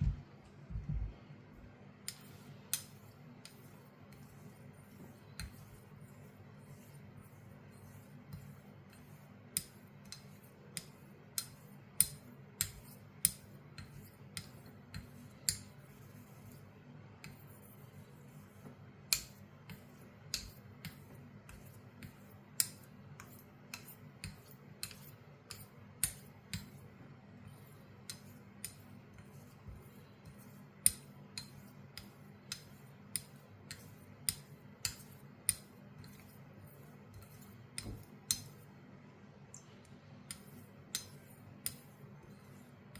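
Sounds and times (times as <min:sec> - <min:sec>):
low hum: 0:00.0 - 0:01.8.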